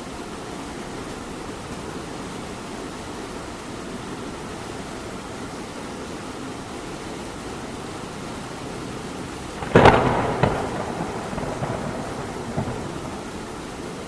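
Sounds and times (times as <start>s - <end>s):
steady rain falling: 0.0s - 14.0s
thunder clap and rumble: 9.6s - 14.0s.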